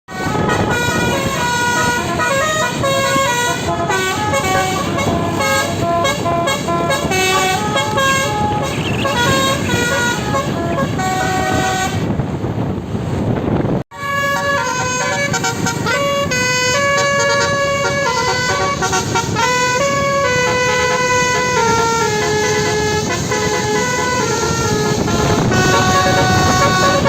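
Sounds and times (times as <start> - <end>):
multi-tone bus horn jingle: 0.1 - 12.6, 13.9 - 27.0
dense noisy background: 3.7 - 12.7.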